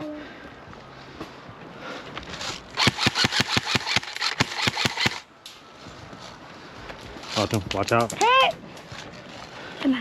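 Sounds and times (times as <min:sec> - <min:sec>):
airsoft gun rapid firing: 0:02.8 - 0:05.2.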